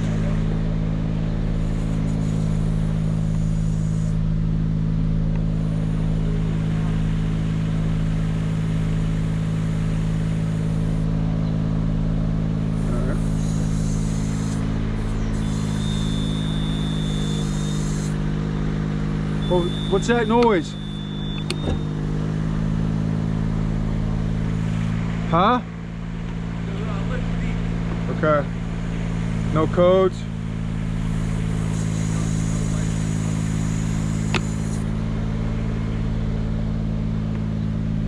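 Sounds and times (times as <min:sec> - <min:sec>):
engine running steadily: 0:00.0 - 0:38.0
high steady tone: 0:12.8 - 0:18.2, 0:19.3 - 0:22.0.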